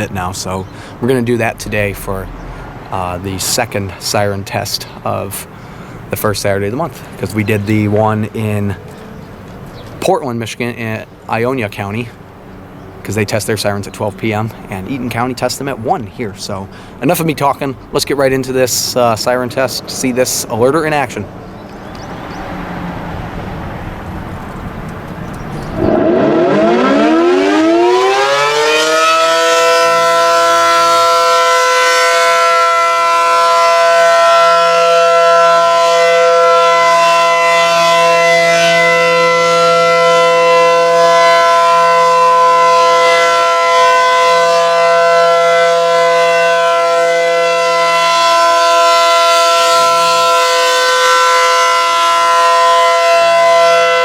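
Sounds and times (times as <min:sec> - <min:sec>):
warning siren wailing: 0:25.7 - 0:54.0.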